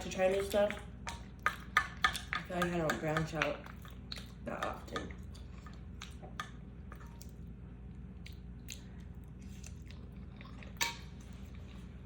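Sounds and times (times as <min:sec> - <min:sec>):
person chewing food: 0:01.1 - 0:02.4, 0:03.6 - 0:04.4, 0:05.0 - 0:12.0.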